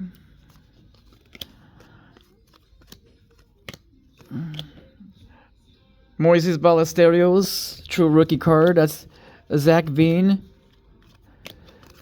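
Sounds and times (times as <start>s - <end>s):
cards flipped by hand: 0.1s - 5.0s, 7.8s - 12.0s
card stock clicks and snaps: 0.5s - 4.9s, 10.6s - 12.0s.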